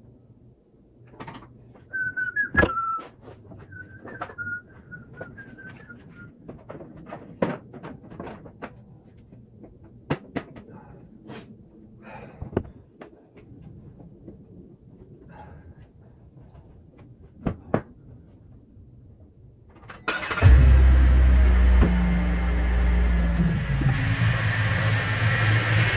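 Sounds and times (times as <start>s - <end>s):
person whistling: 1.9s - 6.3s
knocks and clunks: 3.6s - 10.9s.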